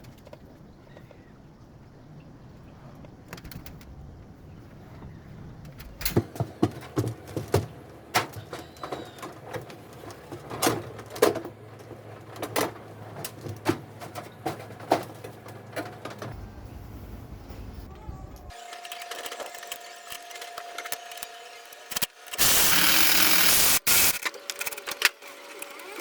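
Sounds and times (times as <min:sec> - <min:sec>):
low steady hum: 0:16.2 - 0:18.5.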